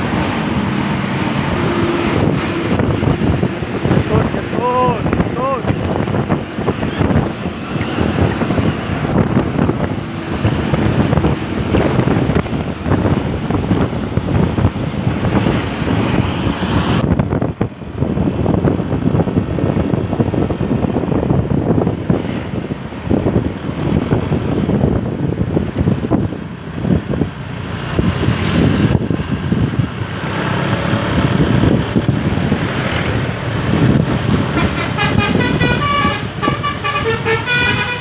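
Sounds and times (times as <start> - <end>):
road vehicle running at speed: 0.0 - 38.0
wind buffeting microphone: 0.0 - 38.0.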